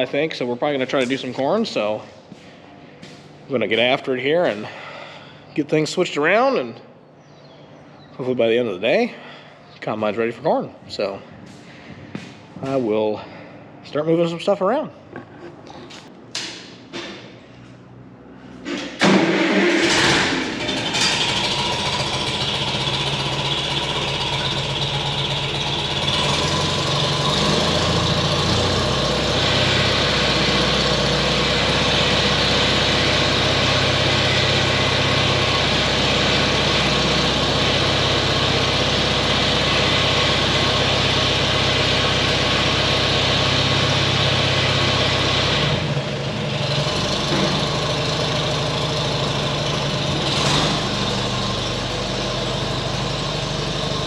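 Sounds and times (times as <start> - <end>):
farm machine engine running: 18.7 - 54.0.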